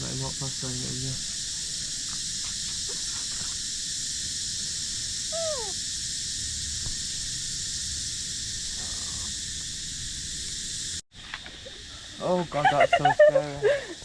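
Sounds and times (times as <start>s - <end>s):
steady high hiss: 0.0s - 14.0s
animal call falling in pitch: 5.4s - 5.8s.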